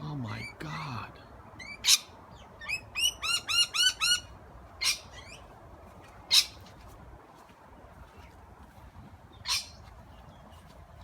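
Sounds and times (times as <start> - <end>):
parrots chirping: 1.6 - 5.5.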